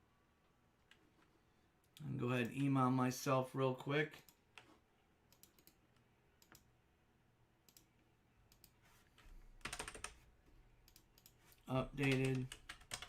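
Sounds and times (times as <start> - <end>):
keyboard keys clicking: 9.6 - 10.2, 12.0 - 13.0.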